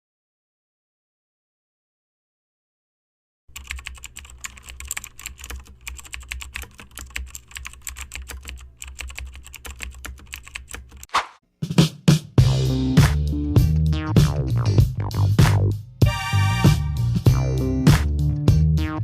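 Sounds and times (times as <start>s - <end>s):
keyboard typing: 3.5s - 11.1s
music: 11.6s - 19.0s.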